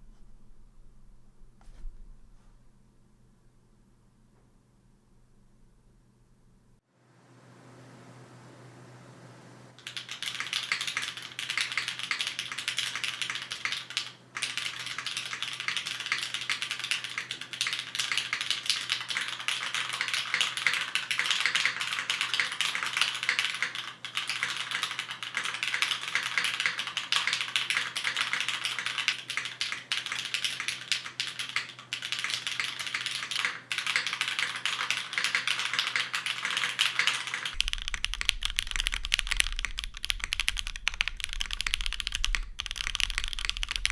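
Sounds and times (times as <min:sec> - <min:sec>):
fast mechanical keyboard typing: 0:09.8 - 0:43.9.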